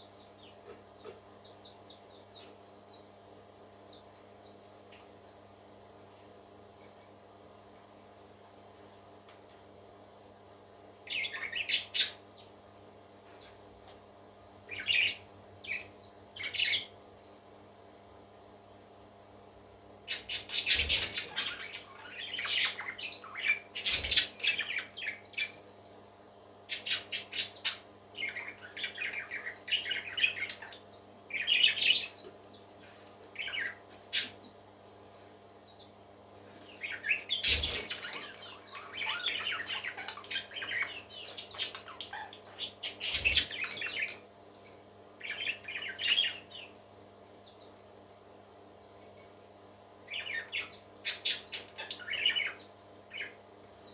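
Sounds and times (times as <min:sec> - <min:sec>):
parrots chirping and squawking: 0:20.1 - 0:25.6, 0:36.8 - 0:46.4.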